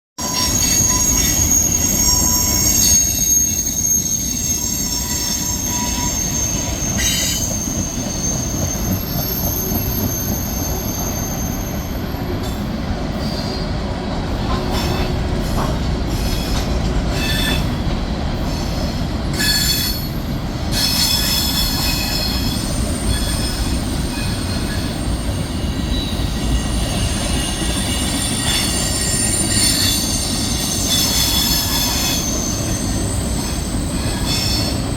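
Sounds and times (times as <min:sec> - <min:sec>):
high thin wheel squeal: 0:00.2 - 0:12.2, 0:19.3 - 0:34.9
freight train rumbling on rails: 0:00.2 - 0:34.9.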